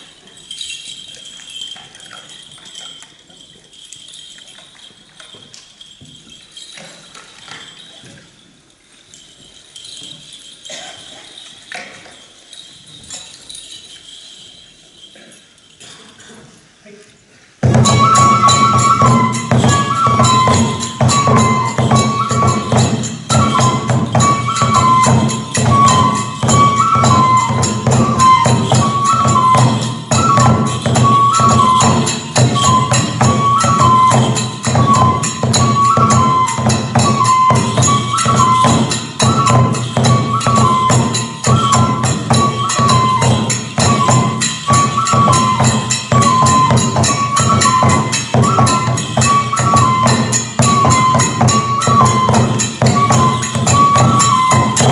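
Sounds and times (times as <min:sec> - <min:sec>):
jingling hand cymbals: 0:00.0 - 0:16.8, 0:17.5 - 0:54.9
fast drum beats: 0:17.6 - 0:54.9
transverse flute melody: 0:17.7 - 0:54.9.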